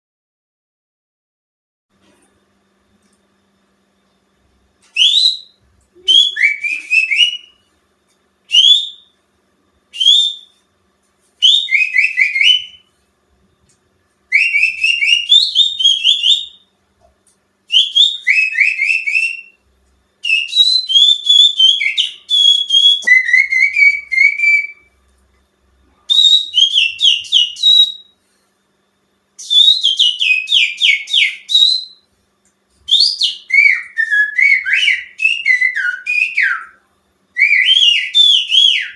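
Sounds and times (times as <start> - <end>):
finger whistling birdsong imitation: 4.9 - 7.7, 8.5 - 9.2, 9.9 - 10.6, 11.4 - 12.9, 14.3 - 16.7, 17.7 - 19.6, 20.2 - 25.0, 25.9 - 28.2, 29.4 - 32.1, 32.8 - 36.8, 37.4 - 38.9.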